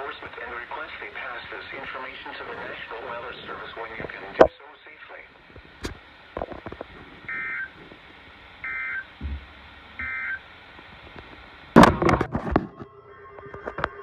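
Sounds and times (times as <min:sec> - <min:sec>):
loud noise burst with clicks: 0:05.8 - 0:06.8.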